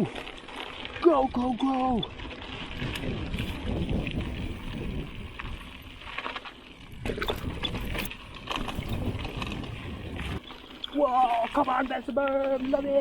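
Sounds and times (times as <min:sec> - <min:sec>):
bike rattling over bumps: 0:00.0 - 0:13.0
bike tyre rumble on dirt: 0:00.0 - 0:13.0
wind on microphone: 0:02.7 - 0:06.0, 0:06.8 - 0:10.4.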